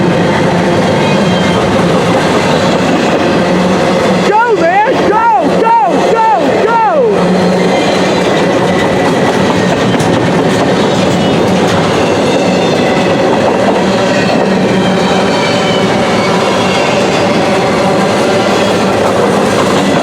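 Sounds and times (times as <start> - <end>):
steel wheels rumbling on rail: 0.0 - 20.0
wheels clicking over rail joints: 7.6 - 14.7.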